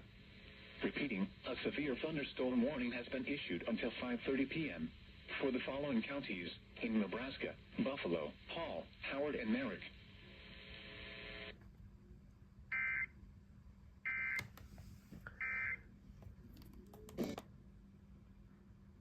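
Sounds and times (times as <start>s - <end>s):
clicks: 14.3s - 15.4s.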